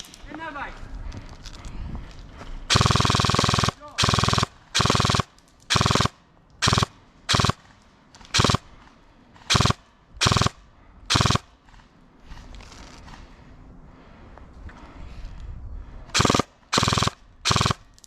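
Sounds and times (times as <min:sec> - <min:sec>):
airsoft gun firing bursts: 0:02.7 - 0:08.8, 0:09.4 - 0:11.6, 0:16.2 - 0:18.0.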